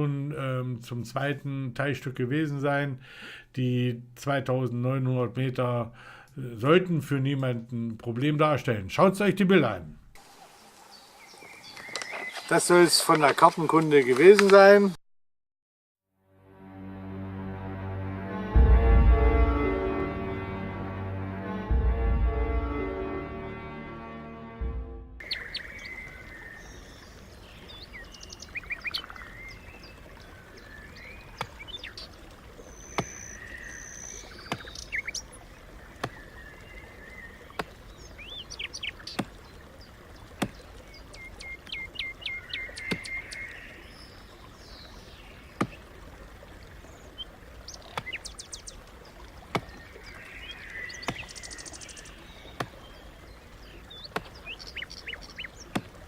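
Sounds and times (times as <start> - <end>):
birds chirping and trilling: 10.2 - 14.3, 25.2 - 56.0.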